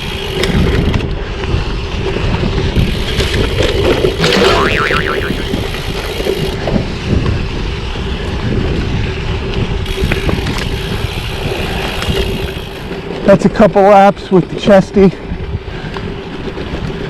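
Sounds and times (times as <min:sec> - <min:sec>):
wind on microphone: 0:00.0 - 0:13.2.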